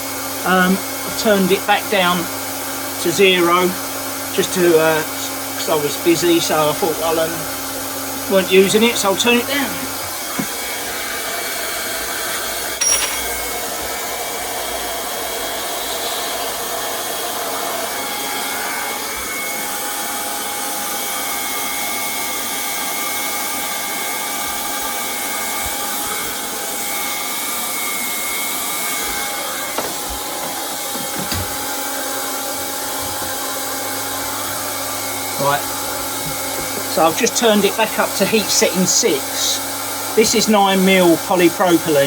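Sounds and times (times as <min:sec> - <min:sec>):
hot-air welding gun fan whining: 0:00.0 - 0:42.0.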